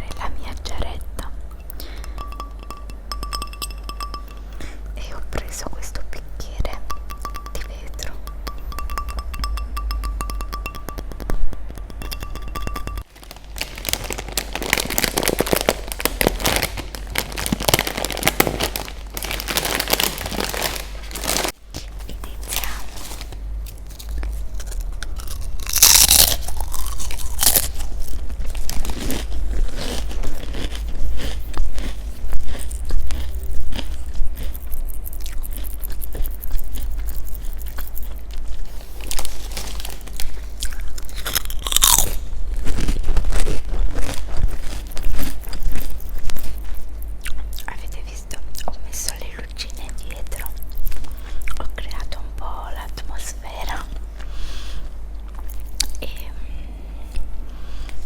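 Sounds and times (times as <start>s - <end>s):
steady low hum: 0.0s - 58.0s
crunchy food being chewed: 13.2s - 48.8s.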